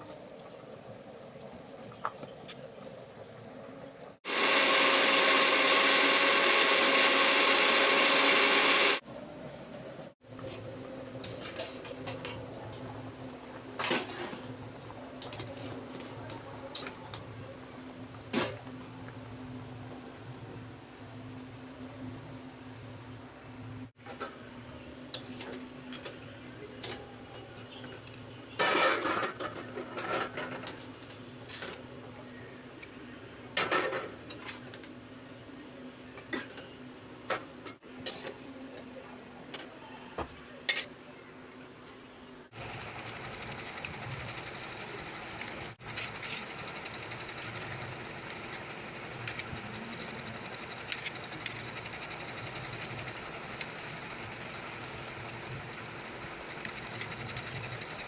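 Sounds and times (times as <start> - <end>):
utensils clattering on dishes: 11.2 - 12.4, 28.6 - 30.9.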